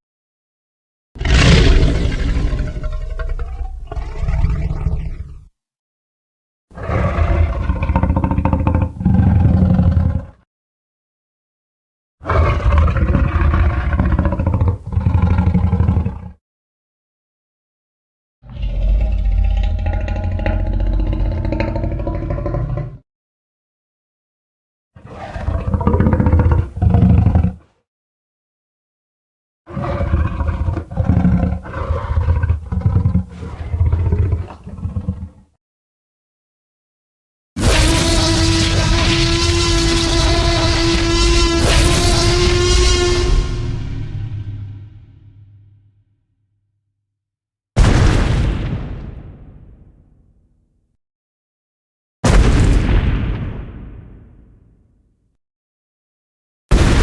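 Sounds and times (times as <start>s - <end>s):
monster roar: 1.2s - 5.2s, 6.8s - 10.4s, 12.2s - 16.4s, 18.5s - 23.0s
deep monster roar: 1.2s - 5.4s, 6.7s - 10.4s, 12.2s - 16.4s, 18.4s - 23.0s, 25.0s - 27.6s, 29.7s - 35.3s, 37.6s - 45.8s.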